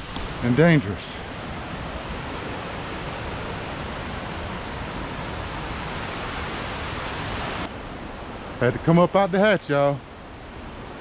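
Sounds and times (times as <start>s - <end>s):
waterfall rushing: 0.0s - 7.7s.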